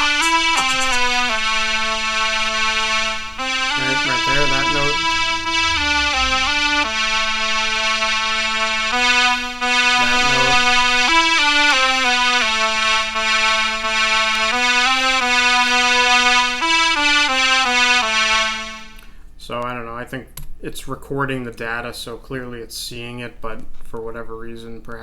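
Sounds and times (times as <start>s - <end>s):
sustained electric piano notes: 0.0s - 19.0s.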